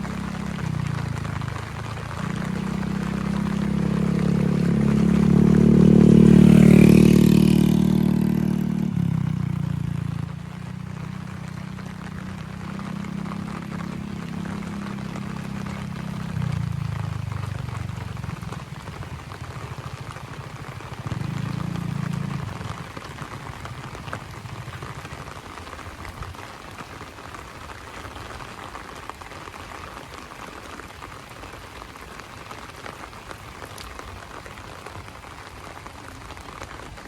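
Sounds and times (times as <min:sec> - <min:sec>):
vehicle passing by: 0:00.0 - 0:25.2
low engine hum: 0:00.0 - 0:25.3
heavy rain: 0:00.0 - 0:37.0.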